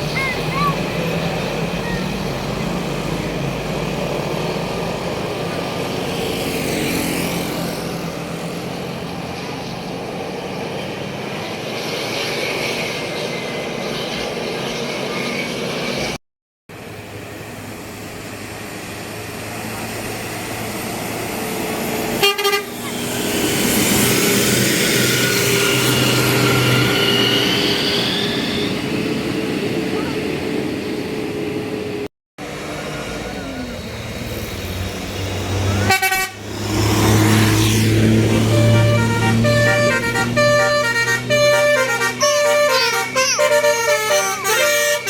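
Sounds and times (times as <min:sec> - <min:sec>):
traffic passing on road: 0:00.0 - 0:45.0
horn toots: 0:22.2 - 0:22.9, 0:35.8 - 0:45.0.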